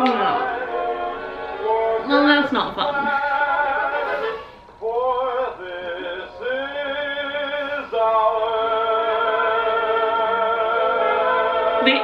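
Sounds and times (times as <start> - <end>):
music: 0.0 - 12.0.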